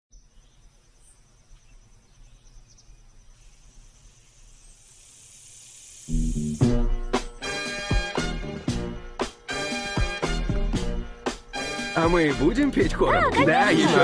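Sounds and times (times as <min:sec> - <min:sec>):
insects chirping trill: 0:00.1 - 0:14.0
high hiss: 0:03.2 - 0:10.2.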